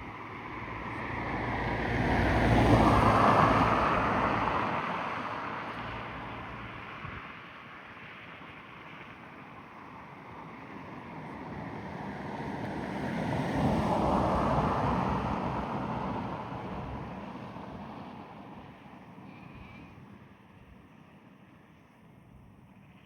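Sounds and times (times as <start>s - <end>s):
vehicle passing by: 0.6s - 5.2s.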